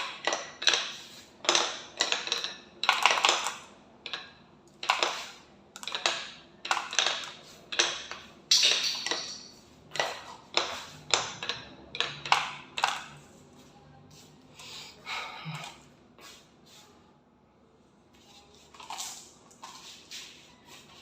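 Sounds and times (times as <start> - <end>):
marbles clicking down marble run: 0.0 - 13.2.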